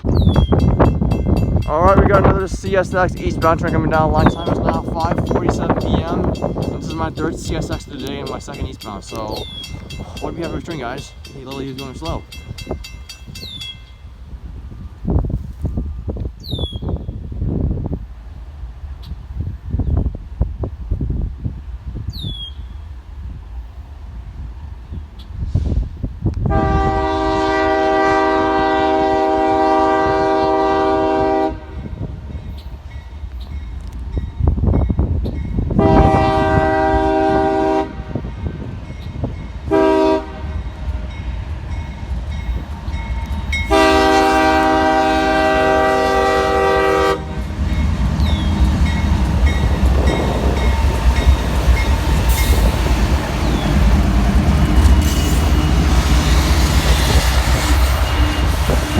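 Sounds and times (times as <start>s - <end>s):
train wheels clacking on rails: 0.3s - 13.9s, 38.4s - 58.9s
locomotive chime horn: 26.5s - 32.0s, 35.7s - 38.6s, 39.6s - 41.3s, 43.0s - 52.6s.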